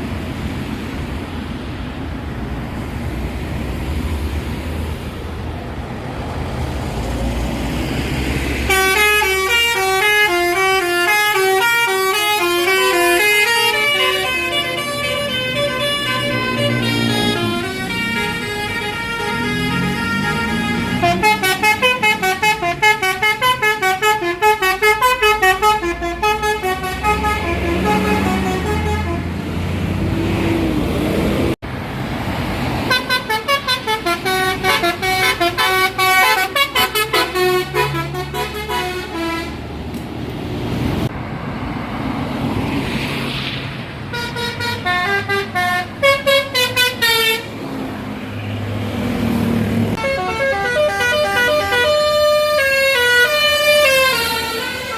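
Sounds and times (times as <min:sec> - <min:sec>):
bus engine running: 0:00.0 - 0:42.3
multi-tone air horns melody: 0:08.7 - 0:29.4, 0:32.9 - 0:39.6, 0:44.1 - 0:47.5, 0:50.0 - 0:54.9.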